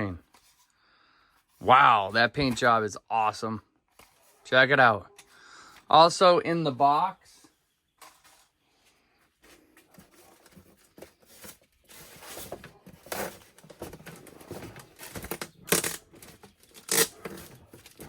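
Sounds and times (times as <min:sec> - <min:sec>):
packaging rustling and crinkling: 0:09.4 - 0:18.0
loud packaging rips: 0:14.9 - 0:18.0.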